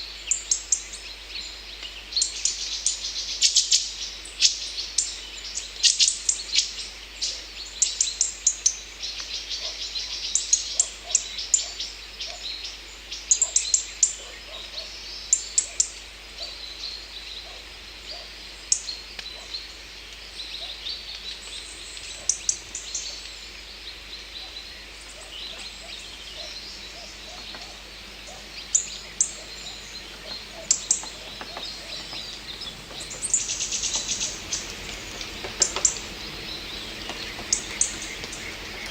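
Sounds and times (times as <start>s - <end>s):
faint outdoor hiss: 0.0s - 38.9s
songbirds chirping: 16.6s - 38.9s.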